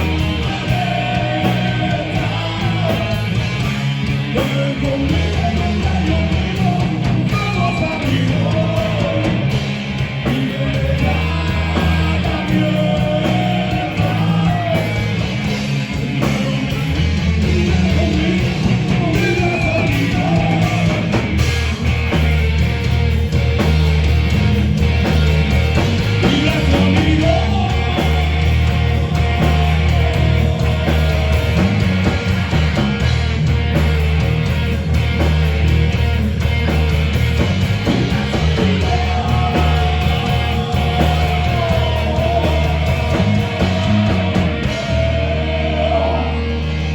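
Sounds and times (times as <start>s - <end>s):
live heavy rock band: 0.0s - 46.9s
person singing: 38.5s - 46.9s.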